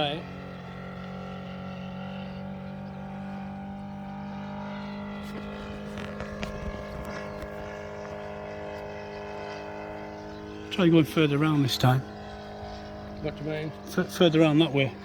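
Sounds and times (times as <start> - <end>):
model airplane engine droning: 0.0 - 15.0.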